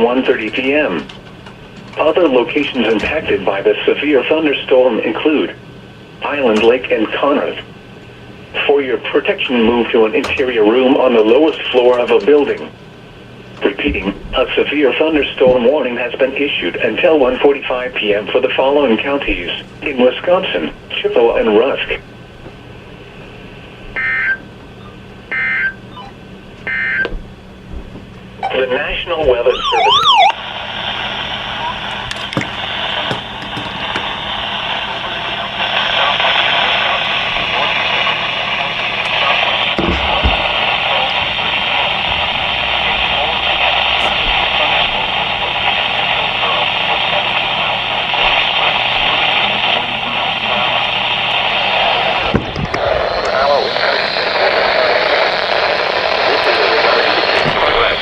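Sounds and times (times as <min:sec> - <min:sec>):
radio static hiss: 0:00.0 - 0:58.0
steady low hum: 0:00.0 - 0:58.0
digital data tone bursts: 0:24.0 - 0:27.1, 0:28.4 - 0:30.4.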